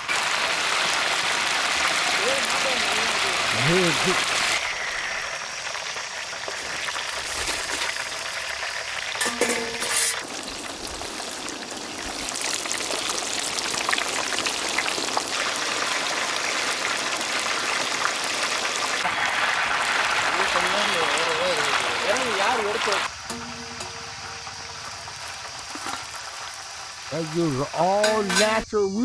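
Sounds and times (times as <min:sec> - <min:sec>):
hot oil sizzling and crackling: 0:00.0 - 0:28.7.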